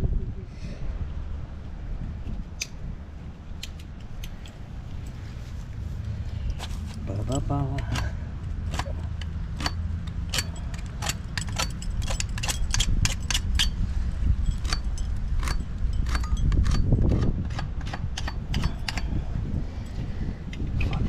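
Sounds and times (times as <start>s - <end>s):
low rumble: 0.0s - 21.0s
hand tools clicking on metal: 6.5s - 13.8s, 14.4s - 19.2s.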